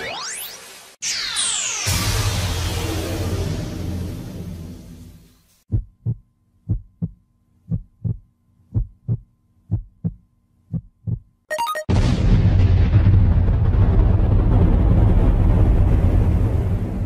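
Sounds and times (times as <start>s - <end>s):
noisy sound effect: 0.0s - 5.0s
heartbeat thumps: 5.7s - 11.3s.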